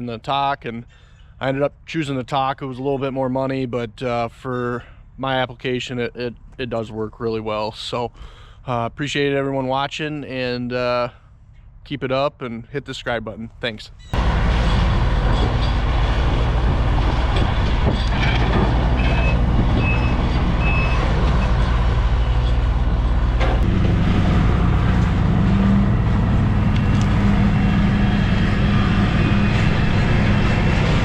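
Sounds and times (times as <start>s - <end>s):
diesel engine running: 14.2s - 31.0s.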